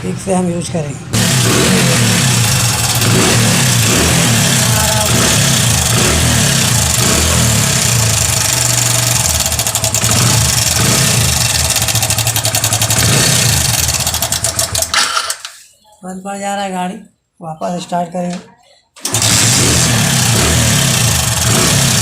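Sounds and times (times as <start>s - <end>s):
motorcycle engine revving and idling: 1.1s - 15.0s, 19.1s - 22.0s.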